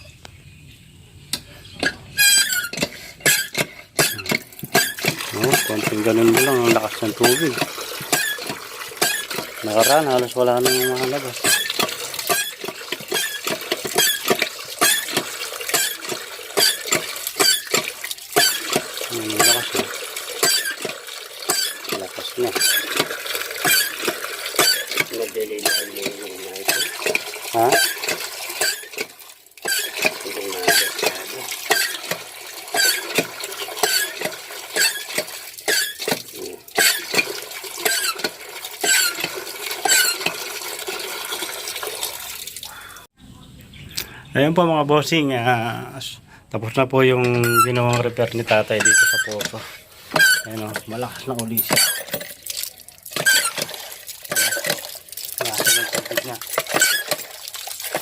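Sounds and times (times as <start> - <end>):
water pump handle squeaking: 1.3 - 43.0, 46.7 - 58.0
water gushing: 1.8 - 43.1, 44.7 - 58.0.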